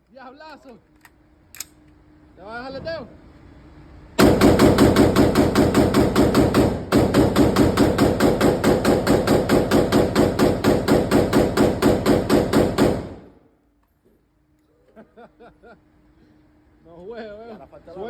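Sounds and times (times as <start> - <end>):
rapid gunshots: 4.2 - 13.4.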